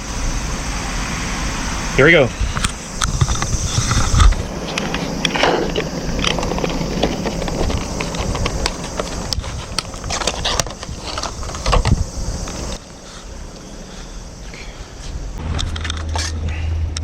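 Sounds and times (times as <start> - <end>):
low rumble: 0.0 - 10.1.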